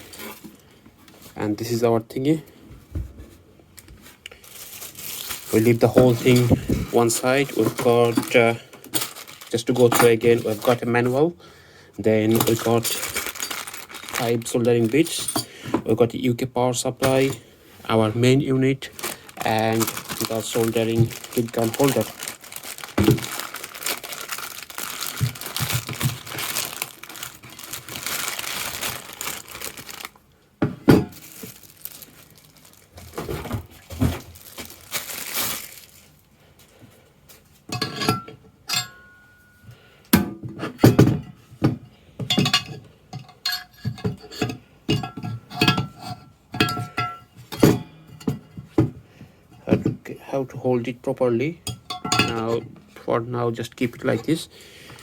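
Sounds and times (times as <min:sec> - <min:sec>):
packaging crinkling: 0:04.2 - 0:10.9, 0:12.3 - 0:15.2, 0:18.8 - 0:30.3, 0:31.1 - 0:36.3
parts knocking and thudding: 0:46.6 - 0:49.1.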